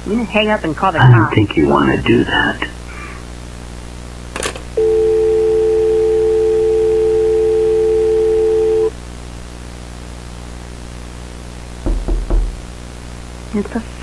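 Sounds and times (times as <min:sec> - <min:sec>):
telephone dial tone: 0:04.8 - 0:08.9.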